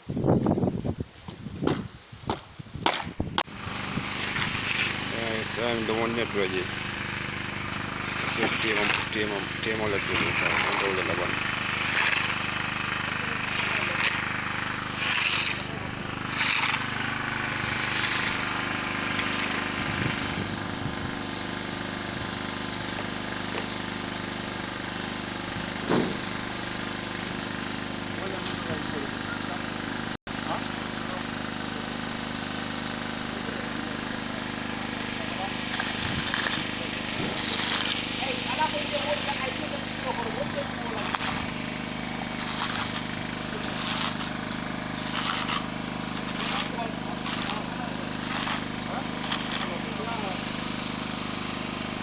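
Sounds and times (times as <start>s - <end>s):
small engine running: 3.4s - 52.0s
sharp knocks: 25.8s - 26.2s.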